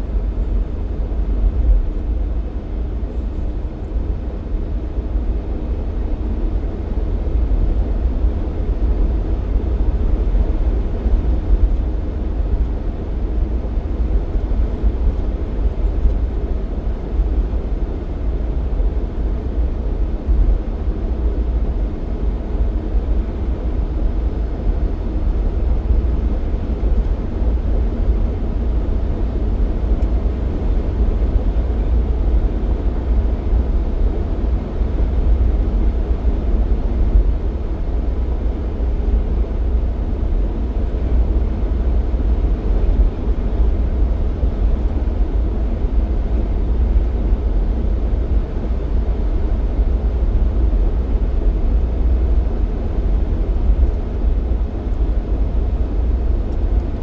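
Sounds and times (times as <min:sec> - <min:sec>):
car engine and road noise: 0:22.4 - 0:57.0.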